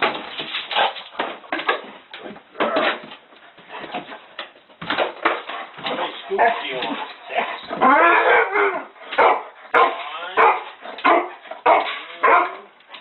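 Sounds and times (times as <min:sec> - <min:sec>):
dog whining: 0:07.4 - 0:09.0
dog barking: 0:07.8 - 0:12.7.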